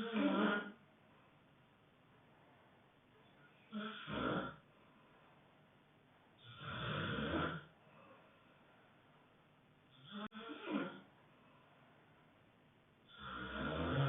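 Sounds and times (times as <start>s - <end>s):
person snoring: 0.0s - 0.8s, 3.7s - 4.7s, 6.4s - 7.7s, 10.0s - 11.1s, 13.1s - 14.0s
quiet breathing: 0.6s - 13.6s.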